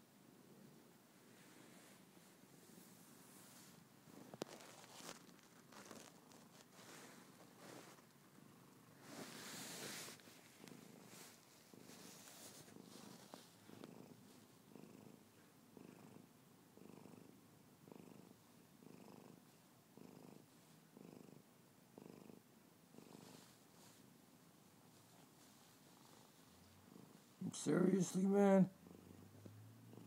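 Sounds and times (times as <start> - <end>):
cat snoring: 4.4 - 19.4, 20.0 - 21.4, 22.0 - 24.0, 28.8 - 30.0.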